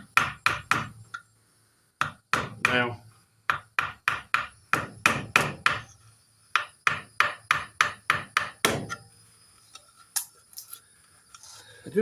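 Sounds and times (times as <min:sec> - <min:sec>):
chisel striking wood: 0:00.0 - 0:01.1, 0:02.0 - 0:02.9, 0:03.5 - 0:05.9, 0:06.6 - 0:09.0.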